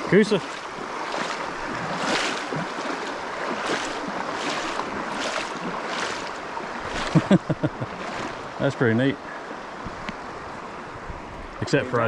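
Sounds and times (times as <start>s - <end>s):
river water rushing over rocks: 0.0s - 8.7s.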